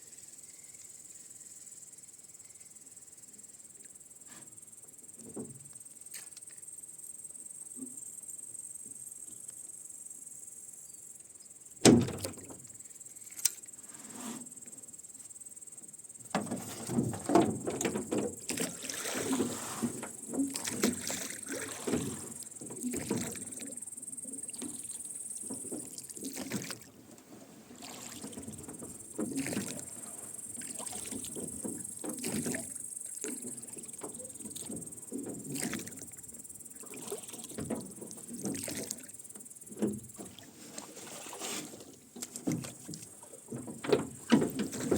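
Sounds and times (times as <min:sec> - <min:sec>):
crickets chirring: 0:00.0 - 0:44.9
oarlocks creaking and knocking: 0:16.2 - 0:44.9
oars splashing in water: 0:16.4 - 0:44.9.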